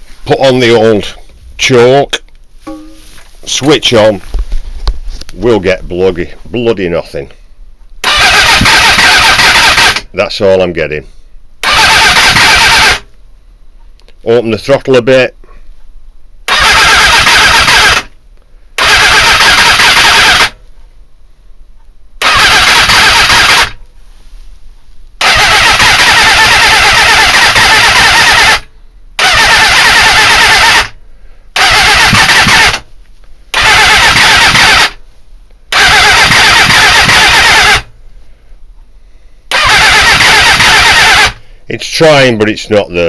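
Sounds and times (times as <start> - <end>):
motorcycle engine cranking: 8.0 - 10.1, 11.6 - 13.1, 16.5 - 18.1, 18.8 - 20.6, 22.2 - 23.8, 25.2 - 31.0, 31.6 - 32.9, 33.6 - 35.0, 35.7 - 37.9, 39.5 - 41.4.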